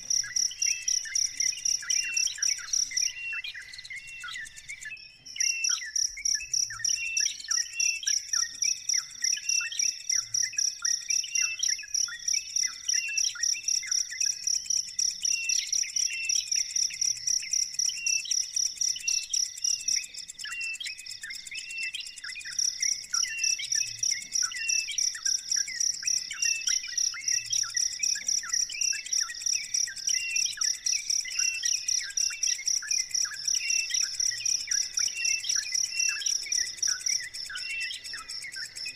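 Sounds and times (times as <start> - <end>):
high falling bird chirps: 0.0 - 8.5, 19.9 - 38.9
cricket chirping: 0.0 - 38.9.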